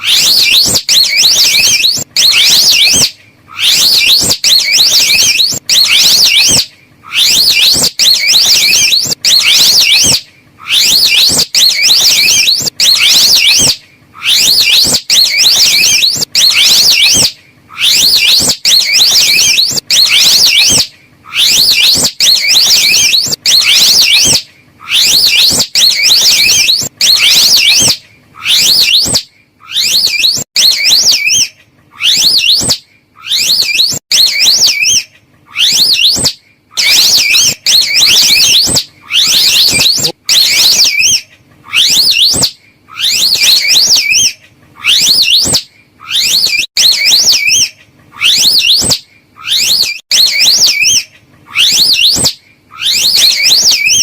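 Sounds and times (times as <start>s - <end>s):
high wavering animal trills: 0.0s - 54.0s.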